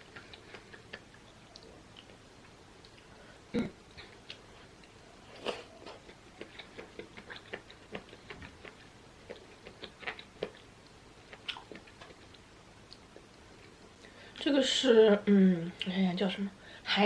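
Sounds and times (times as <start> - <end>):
chewing and mouth noises: 0.0 - 3.1, 4.0 - 14.1.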